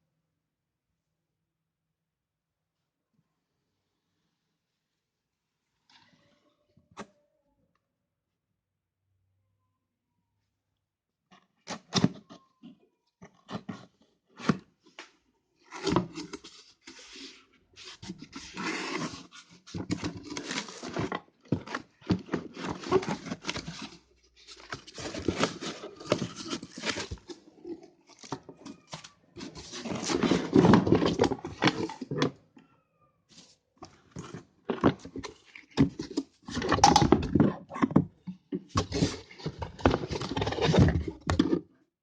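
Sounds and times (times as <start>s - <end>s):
packaging rustling: 15.7s - 32.2s
box clicks and knocks: 34.2s - 41.6s.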